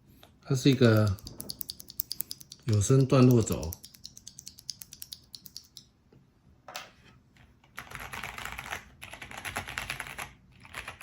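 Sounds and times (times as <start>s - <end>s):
mechanical keyboard key clicks: 0.7s - 5.8s.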